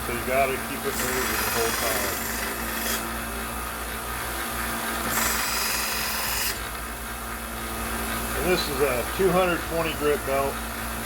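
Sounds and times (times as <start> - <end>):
belt grinder motor hum: 0.0 - 7.1
knife blade grinding on belt: 0.9 - 3.1.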